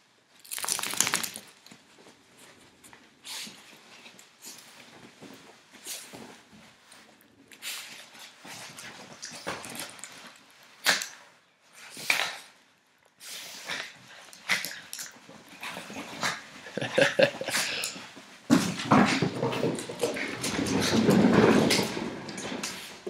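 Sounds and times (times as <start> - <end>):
puppies play-fighting: 13.2 - 18.2.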